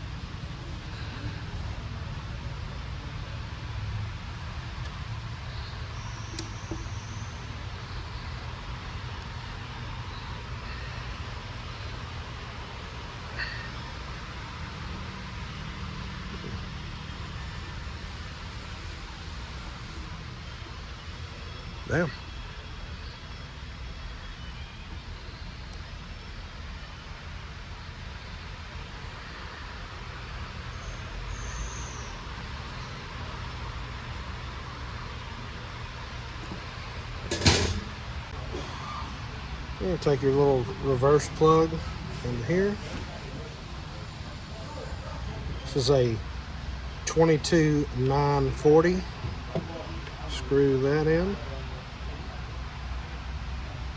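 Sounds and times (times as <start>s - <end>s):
workshop hum and hiss: 0.0s - 53.9s
faint high whistles: 5.4s - 9.4s, 30.5s - 33.9s.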